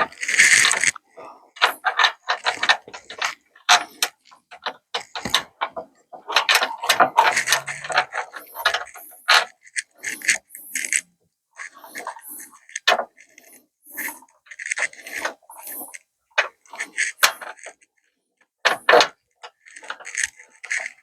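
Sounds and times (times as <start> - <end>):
hand tools clicking and rattling: 1.6 - 11.0.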